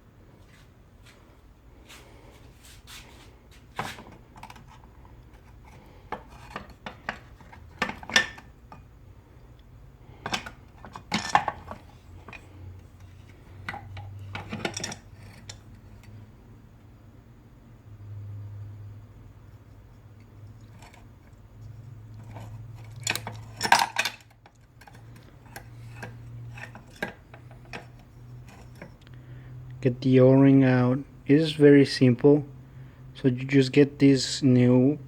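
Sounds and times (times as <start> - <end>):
metal parts and tools clinking: 10.2 - 16.1, 22.2 - 29.0.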